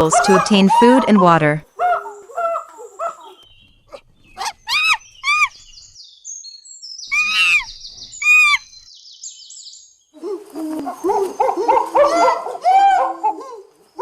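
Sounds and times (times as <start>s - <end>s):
monkey calls: 0.0s - 3.4s, 4.4s - 5.6s, 7.1s - 8.7s, 10.2s - 13.7s
birds chirping: 0.0s - 14.0s.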